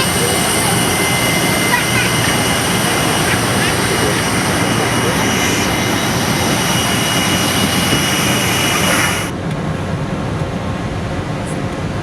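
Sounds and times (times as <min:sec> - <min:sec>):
low engine rumble: 0:00.0 - 0:09.4
jet engine high whine: 0:00.0 - 0:12.0.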